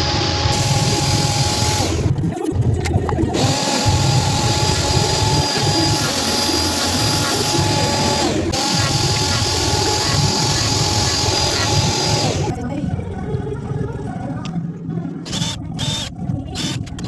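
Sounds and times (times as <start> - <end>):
power tool motor whine: 0.0 - 2.1, 3.4 - 12.5, 15.3 - 17.0.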